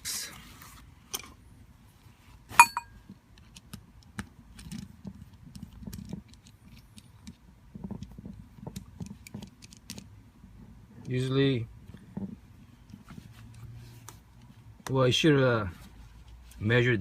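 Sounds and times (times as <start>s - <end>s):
sharp metallic clink: 2.6s - 3.0s.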